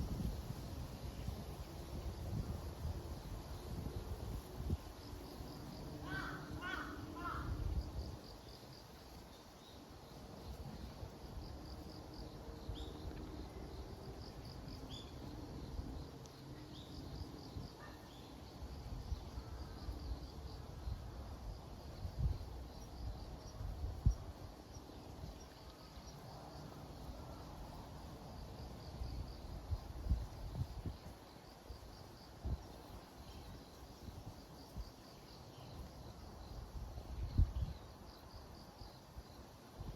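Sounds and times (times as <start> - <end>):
low wind rumble on microphone: 0.0 - 8.3, 18.8 - 25.5, 28.2 - 34.9, 36.4 - 38.2
pulsing insect chirping: 1.2 - 39.6
crow cawing: 6.0 - 7.6.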